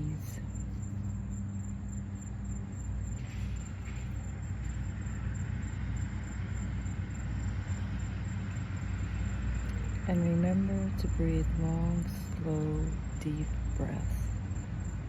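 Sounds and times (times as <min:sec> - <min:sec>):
low droning hum and rumble: 0:00.0 - 0:15.0.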